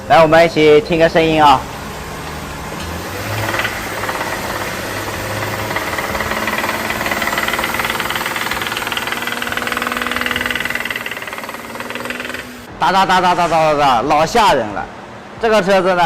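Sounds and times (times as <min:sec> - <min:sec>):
car engine running: 0:01.7 - 0:12.7.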